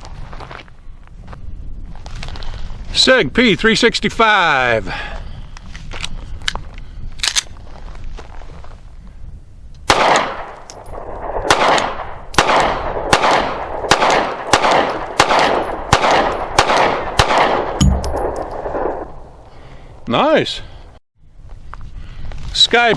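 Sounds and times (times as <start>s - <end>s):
pistol shots with echo: 9.9s - 19.1s.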